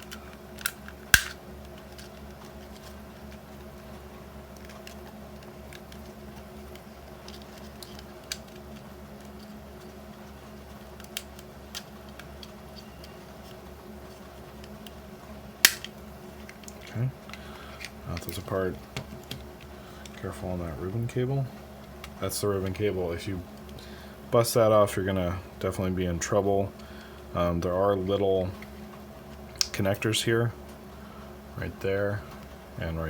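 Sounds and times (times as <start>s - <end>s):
plastic housing clicking and snapping: 0.0s - 1.4s, 15.7s - 15.9s
low background hum: 0.0s - 33.0s.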